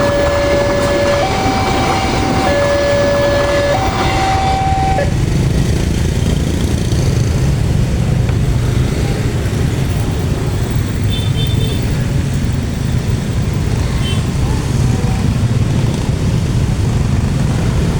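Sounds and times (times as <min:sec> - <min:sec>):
locomotive horn: 0:00.0 - 0:05.2
low rumble of vehicles: 0:00.0 - 0:17.9.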